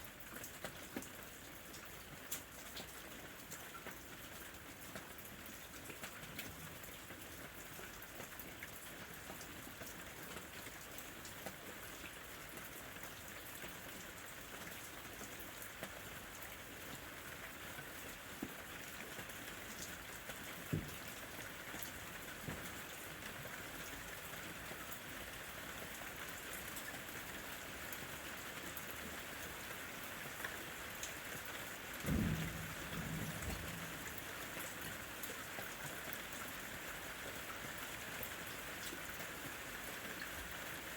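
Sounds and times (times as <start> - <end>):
steady rain falling: 0.0 - 40.9
sharp tap of raindrop: 20.2 - 22.8, 32.0 - 35.0
low rumble of thunder: 32.0 - 34.8.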